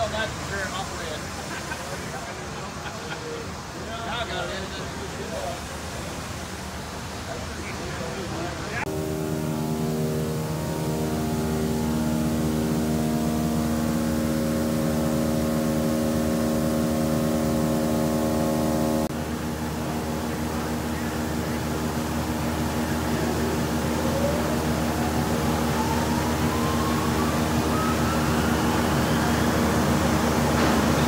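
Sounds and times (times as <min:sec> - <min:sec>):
noisy machine hum: 0:08.1 - 0:31.0
faint rising whine: 0:08.8 - 0:31.0
sawmill motor drone: 0:08.9 - 0:31.0.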